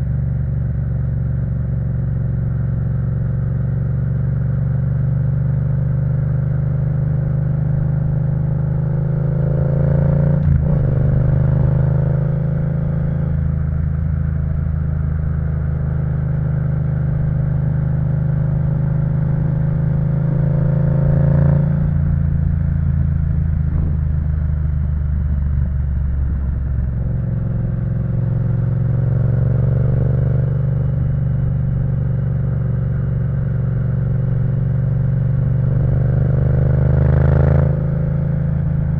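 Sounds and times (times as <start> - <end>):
motorcycle engine revving: 25.5 - 38.9.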